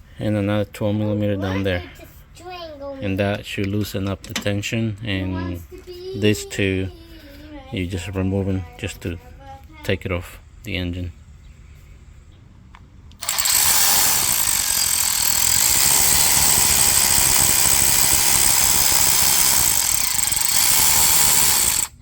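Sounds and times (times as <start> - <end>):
power wrench running: 13.2 - 22.0.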